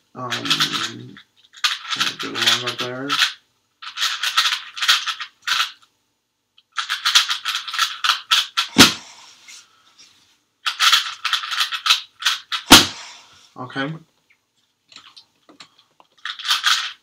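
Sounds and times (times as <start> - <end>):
puzzle cube plastic clicks: 0.3 - 5.9, 6.6 - 8.8, 10.6 - 12.7, 14.9 - 17.0.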